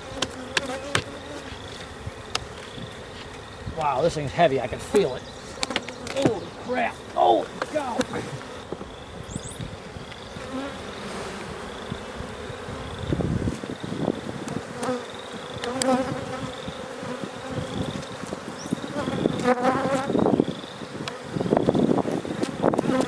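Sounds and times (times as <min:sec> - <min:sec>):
bees buzzing: 0:00.0 - 0:23.0
wooden hive boxes knocking: 0:00.1 - 0:09.0.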